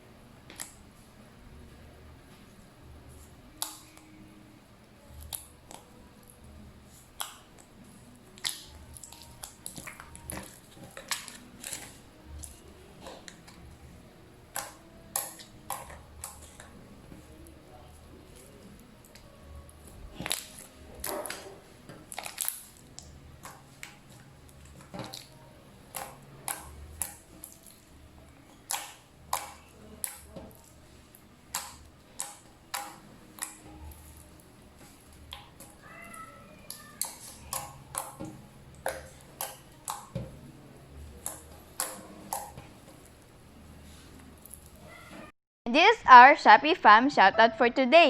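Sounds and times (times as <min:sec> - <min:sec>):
slime clicking and popping: 0:08.4 - 0:12.5, 0:14.5 - 0:16.7, 0:20.2 - 0:21.4, 0:22.1 - 0:24.0, 0:25.9 - 0:27.8, 0:28.7 - 0:30.6, 0:31.5 - 0:34.2.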